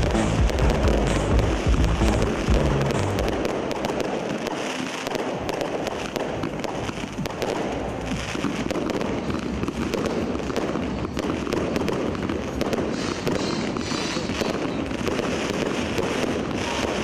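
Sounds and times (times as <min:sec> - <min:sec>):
low firework boom: 0:00.0 - 0:04.0
firework crackle: 0:00.0 - 0:17.0.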